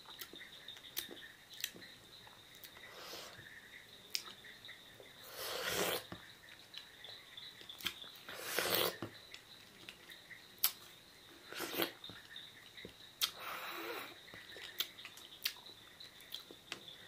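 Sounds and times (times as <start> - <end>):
chewing with wet mouth clicks: 0.0 - 2.8, 7.6 - 10.9, 13.2 - 13.4, 14.5 - 16.6
breathy hissing: 2.8 - 3.4, 5.2 - 6.1, 8.3 - 9.0, 13.3 - 14.2.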